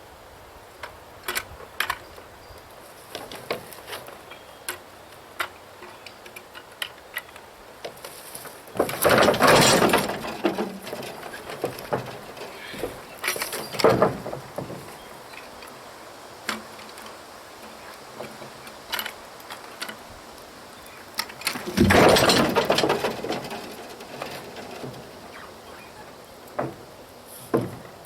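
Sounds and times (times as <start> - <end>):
wood knocking and clattering: 5.4 - 15.8, 21.2 - 28.0.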